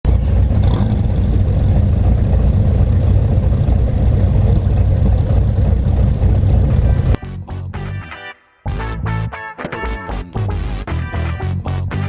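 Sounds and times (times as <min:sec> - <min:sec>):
car engine and road rumble: 0:00.0 - 0:07.2.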